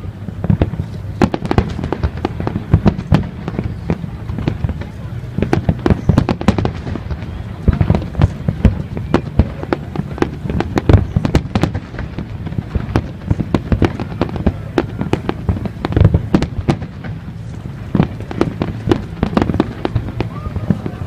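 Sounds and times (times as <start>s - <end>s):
fireworks bangs and crackles: 0.0s - 21.0s
low rumble: 0.0s - 21.0s.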